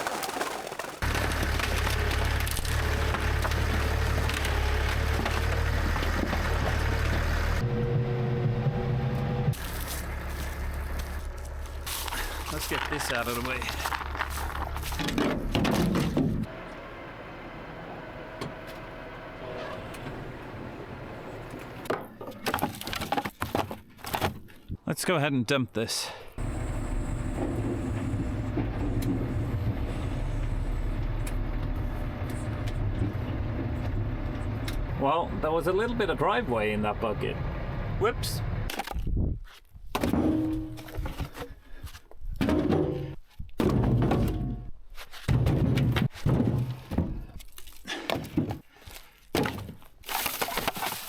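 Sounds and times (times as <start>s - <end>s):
tractor engine running: 0.9s - 21.9s, 26.4s - 38.7s
loader bucket thunks: 1.0s - 8.0s, 11.9s - 16.6s, 26.4s - 34.9s, 39.9s - 41.3s, 42.4s - 48.7s.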